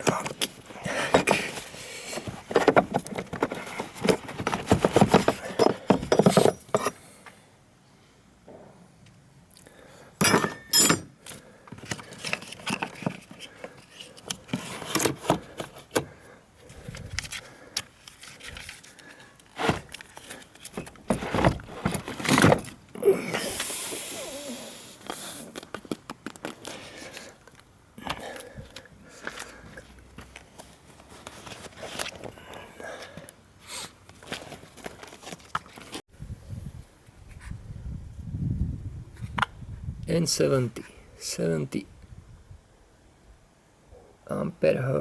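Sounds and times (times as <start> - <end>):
metallic tool clinks and scrapes: 10.2 - 11.1.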